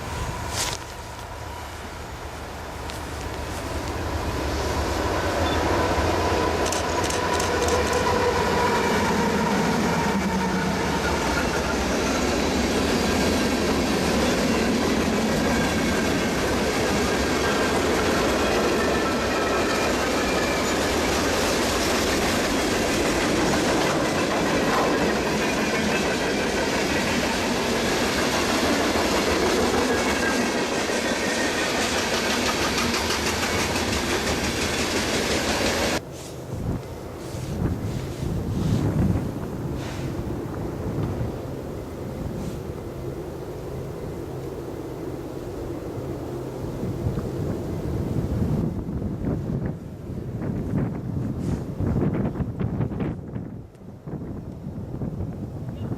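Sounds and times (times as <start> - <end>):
train wheels clattering on rails: 5.4 - 36.0.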